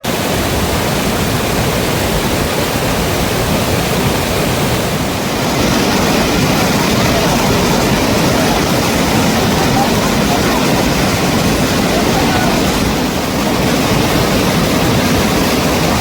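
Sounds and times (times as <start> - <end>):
river water rushing: 0.0 - 16.0.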